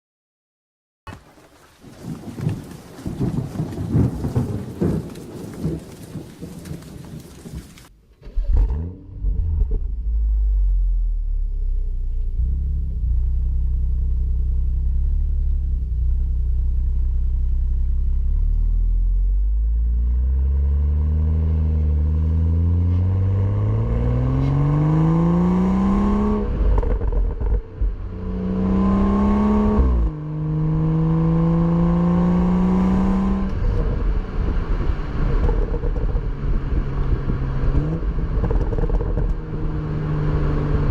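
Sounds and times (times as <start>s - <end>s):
car engine revving and idling: 8.3s - 40.9s
car accelerating through gears: 19.9s - 40.9s.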